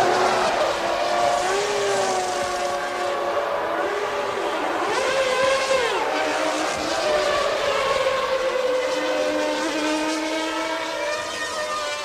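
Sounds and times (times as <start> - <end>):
racing engines at high revs: 0.0 - 12.0.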